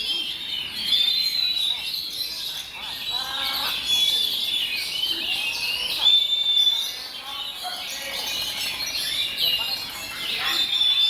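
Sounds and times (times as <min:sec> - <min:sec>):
birds singing in chorus: 0:00.0 - 0:11.0.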